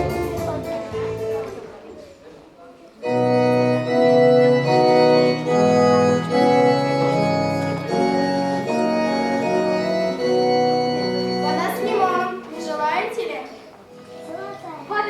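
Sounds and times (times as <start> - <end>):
instrumental music with held chords: 3.1 - 12.2.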